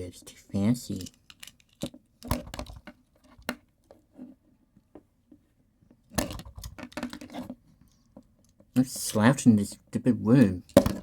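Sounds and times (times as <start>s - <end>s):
objects knocking and clicking: 0.9s - 3.6s, 6.1s - 7.6s, 10.7s - 11.0s.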